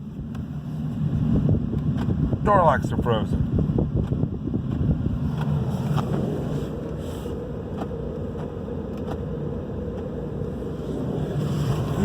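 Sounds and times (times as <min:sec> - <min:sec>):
wind on microphone: 0:00.0 - 0:07.3.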